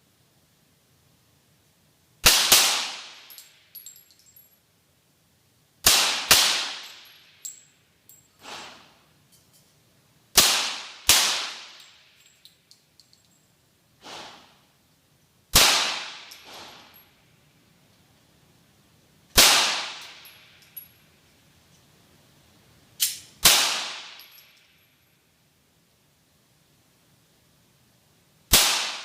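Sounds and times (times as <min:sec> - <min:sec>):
faint gunshot: 0:15.6 - 0:16.8, 0:28.5 - 0:29.0.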